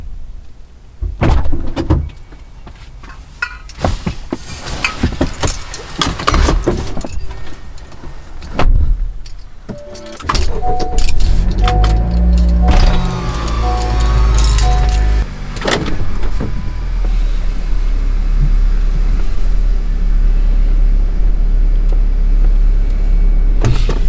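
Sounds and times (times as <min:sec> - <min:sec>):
brief steady tone: 0:09.7 - 0:15.2.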